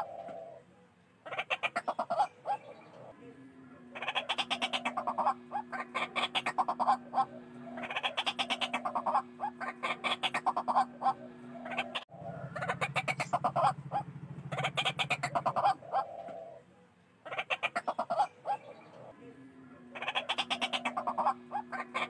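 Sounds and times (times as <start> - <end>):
bird calling in harsh bursts: 4.0 - 16.2, 19.9 - 22.0.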